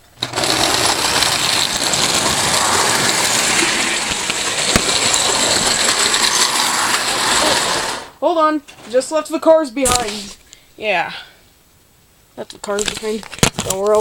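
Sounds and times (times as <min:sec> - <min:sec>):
toy train rattling on track: 0:00.0 - 0:08.2.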